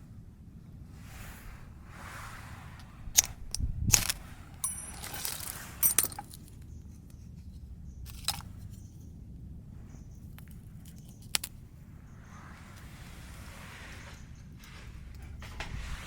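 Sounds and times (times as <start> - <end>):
metal gear clinking: 3.2 - 6.6, 8.1 - 8.9.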